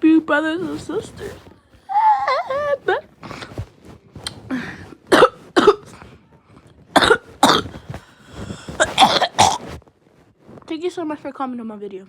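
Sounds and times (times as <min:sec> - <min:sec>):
child coughing: 0:05.1 - 0:06.1, 0:07.0 - 0:08.0, 0:08.8 - 0:09.7.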